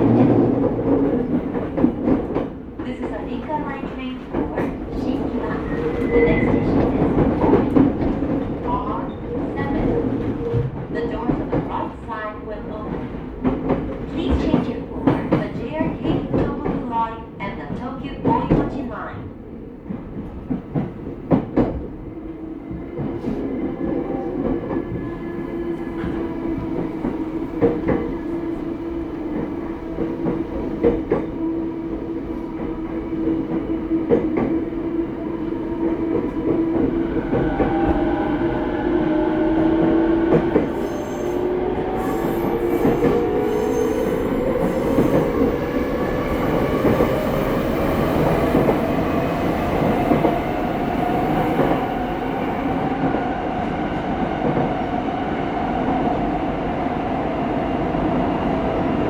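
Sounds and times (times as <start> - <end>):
train wheels on rail: 0.0 - 59.0.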